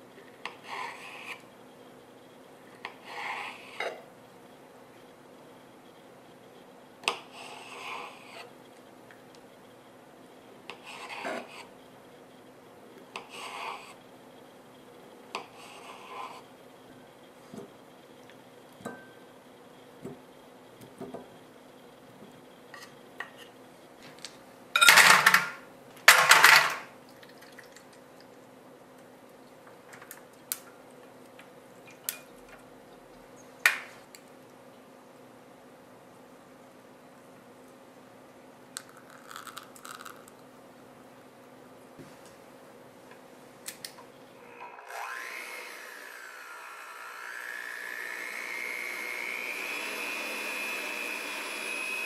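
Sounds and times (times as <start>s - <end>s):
cutlery scraping dishes: 24.8s - 26.8s.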